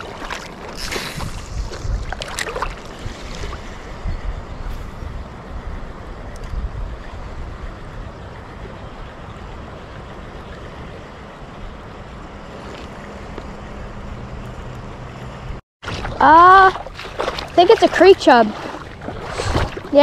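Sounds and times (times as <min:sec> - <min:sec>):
river water flowing: 0:00.0 - 0:03.9, 0:11.4 - 0:20.0
wind rumbling on microphone: 0:00.0 - 0:20.0.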